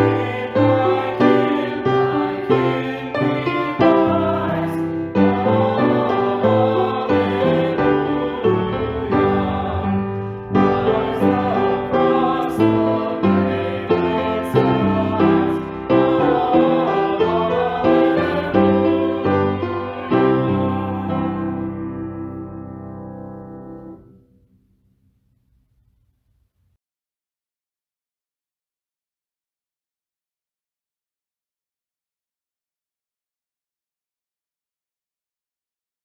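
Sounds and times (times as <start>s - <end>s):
keyboard chords: 3.9s - 24.1s.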